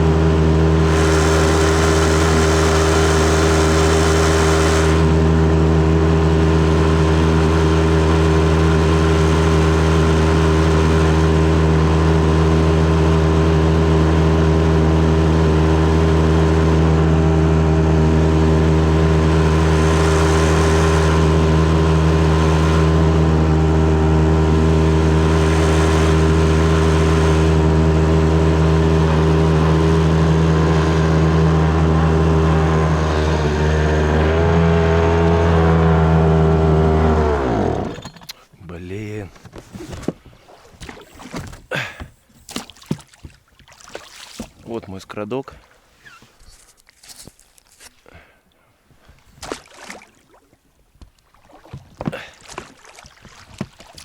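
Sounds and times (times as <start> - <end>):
outboard motor running: 0.0 - 54.0.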